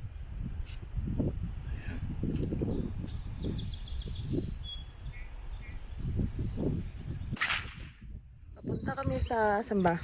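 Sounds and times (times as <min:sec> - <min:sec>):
wind buffeting microphone: 0:00.0 - 0:10.0
small birds chirping: 0:01.6 - 0:07.4, 0:08.6 - 0:10.0.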